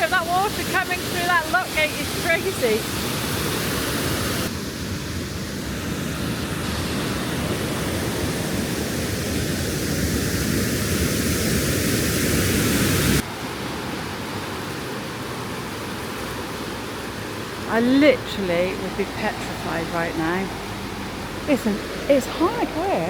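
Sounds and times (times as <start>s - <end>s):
water rushing through lock gate: 0.0s - 4.5s, 13.2s - 23.0s.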